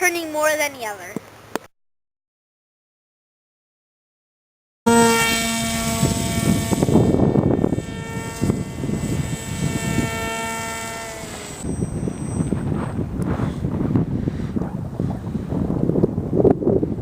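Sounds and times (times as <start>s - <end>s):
model plane motor whining: 4.9s - 13.0s
wind on microphone: 4.9s - 17.0s.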